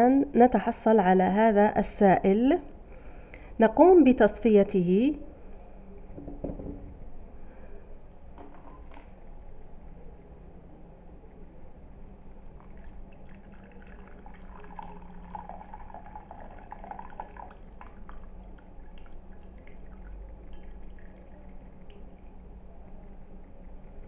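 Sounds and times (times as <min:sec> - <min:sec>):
liquid pouring through strainer: 0:12.4 - 0:23.5.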